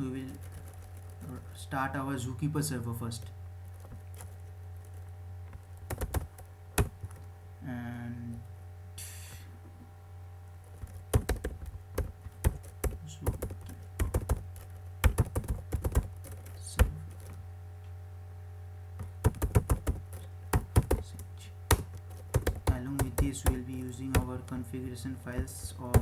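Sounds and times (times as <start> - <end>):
keyboard typing: 0.0 - 1.4, 3.7 - 7.3, 10.6 - 17.4, 19.0 - 26.0
steady low hum: 0.0 - 26.0.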